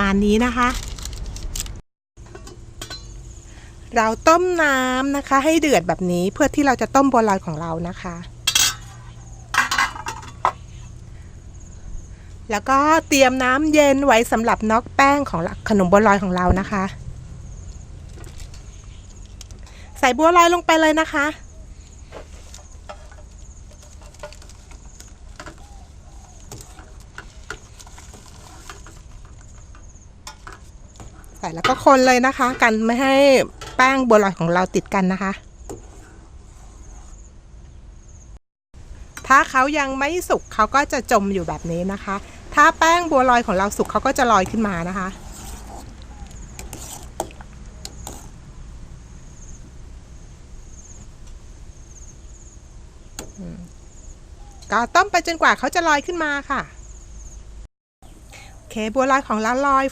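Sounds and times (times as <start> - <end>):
insects chirping: 2.8 - 4.9, 8.7 - 12.4, 17.2 - 33.2, 35.2 - 42.2, 49.0 - 54.6, 56.7 - 58.4
pot of water boiling: 22.2 - 37.1.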